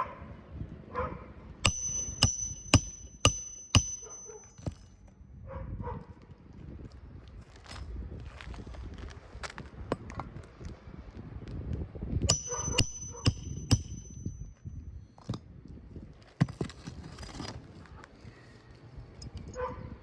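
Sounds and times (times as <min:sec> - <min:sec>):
thin metallic ring: 0:01.7 - 0:05.1, 0:12.3 - 0:14.7.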